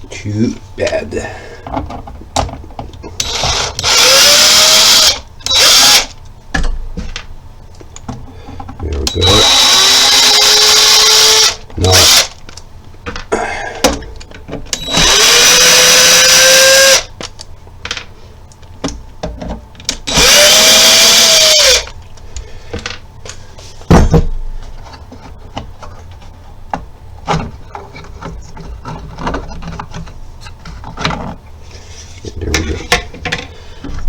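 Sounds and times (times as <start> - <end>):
power drill spinning: 3.2 - 6.2, 9.1 - 12.3, 14.8 - 17.1, 20.1 - 21.9
parts clicking and knocking: 32.4 - 34.0.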